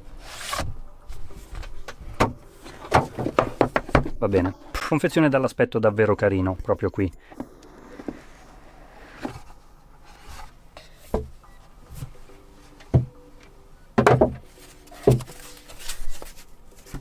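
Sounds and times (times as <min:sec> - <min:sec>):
cardboard rubbing and sliding: 0:07.8 - 0:10.6.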